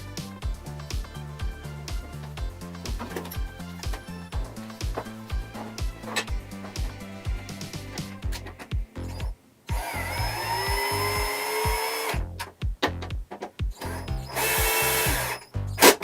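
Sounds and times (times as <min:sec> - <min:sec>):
background music with beat: 0:00.0 - 0:16.0
power tool whining: 0:09.0 - 0:12.2, 0:13.8 - 0:16.0.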